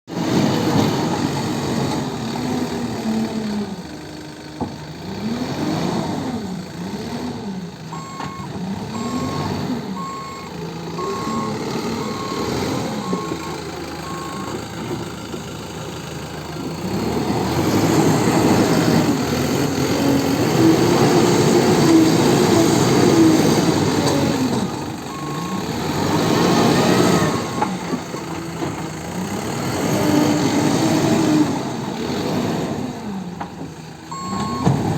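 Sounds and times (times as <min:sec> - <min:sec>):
diesel engine revving: 0:00.1 - 0:34.9
reversing alarm beeping: 0:07.9 - 0:14.6, 0:25.1 - 0:25.7, 0:26.5 - 0:27.8, 0:34.1 - 0:34.8.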